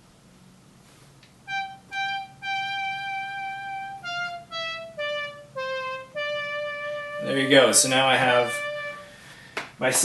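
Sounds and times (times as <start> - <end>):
synthesizer single-note line: 1.5 - 9.2.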